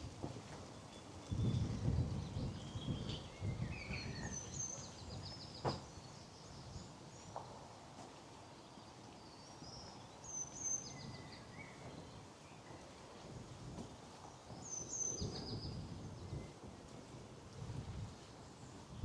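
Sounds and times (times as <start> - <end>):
songbirds singing and chirping: 1.2 - 7.4.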